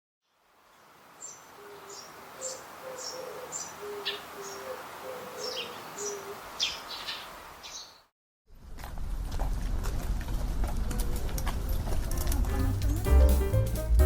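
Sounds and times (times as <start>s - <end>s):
birds chirping: 0.7s - 8.1s.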